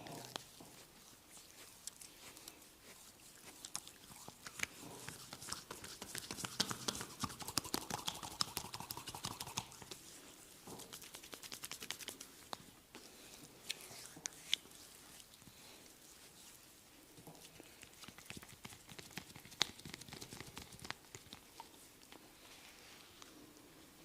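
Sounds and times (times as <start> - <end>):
hands rubbing skin and hair: 0.1 - 13.1, 16.0 - 21.9.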